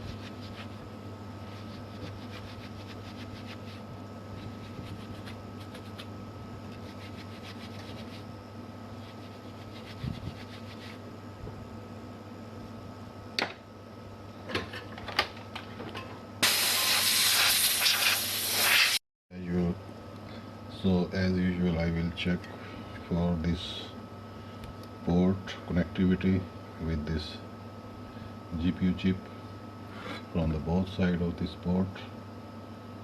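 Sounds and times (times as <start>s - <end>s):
steady low hum: 0.0s - 33.0s
loud hiss of blown air: 16.4s - 19.0s.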